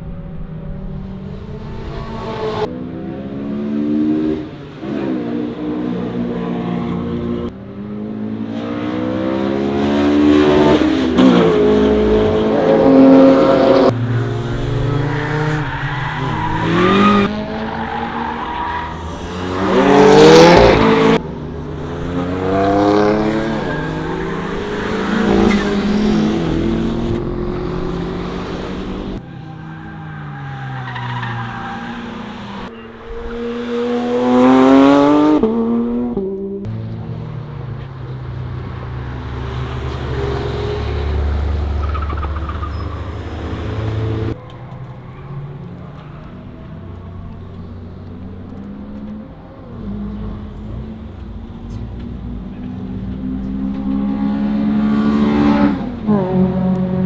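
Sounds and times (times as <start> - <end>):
car engine revving: 0.0 - 44.8, 45.6 - 57.0
tyre squeal: 13.8 - 21.2, 21.9 - 26.6, 28.8 - 34.5, 41.7 - 46.2.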